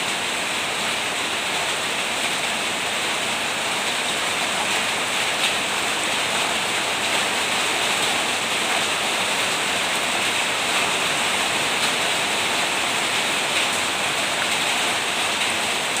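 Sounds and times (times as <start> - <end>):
heavy rain falling: 0.0 - 16.0.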